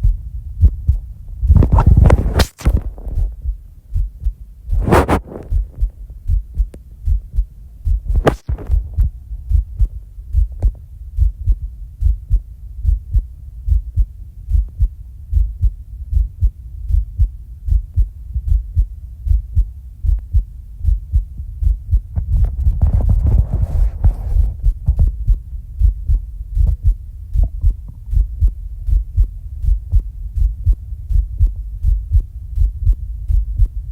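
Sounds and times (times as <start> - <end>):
fast heartbeat thumps: 0.0 - 33.9
brief sharp sound: 1.6 - 3.3, 4.8 - 5.6, 8.2 - 8.9.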